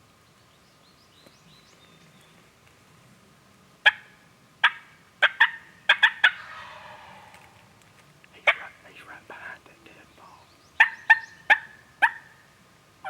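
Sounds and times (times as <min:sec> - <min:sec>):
songbird chirps: 0:00.0 - 0:02.6, 0:06.2 - 0:12.3
turkey yelps: 0:03.8 - 0:07.8, 0:10.8 - 0:12.4.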